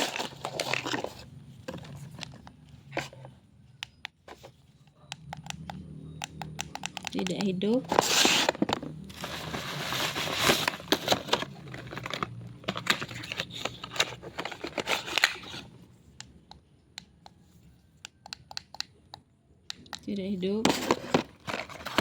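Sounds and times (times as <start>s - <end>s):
plastic packaging crinkling: 0.0s - 2.5s, 7.9s - 15.7s.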